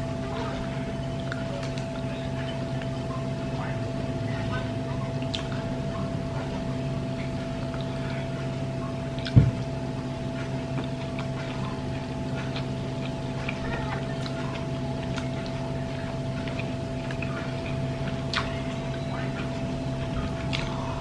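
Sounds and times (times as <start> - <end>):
steady mechanical hum: 0.0 - 21.0
dull thump: 9.4 - 9.6.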